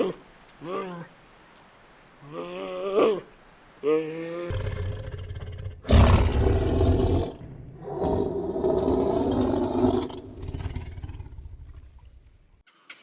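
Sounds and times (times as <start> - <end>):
large animal deep rough calls: 4.5 - 12.2.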